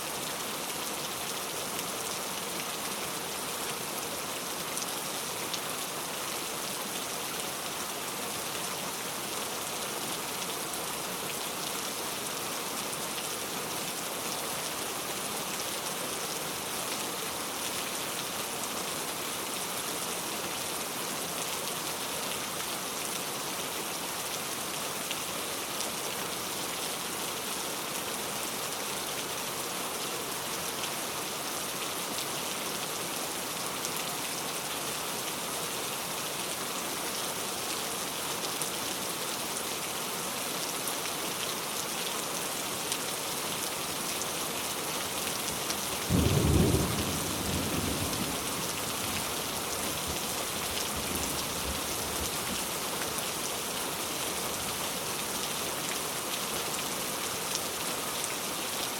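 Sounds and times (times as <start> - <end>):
heavy rain on road: 0.1 - 58.9.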